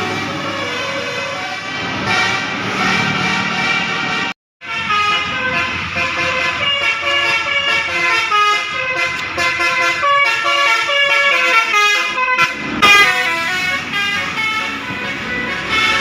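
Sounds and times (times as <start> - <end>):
musical bus air horn: 0.0 - 16.0.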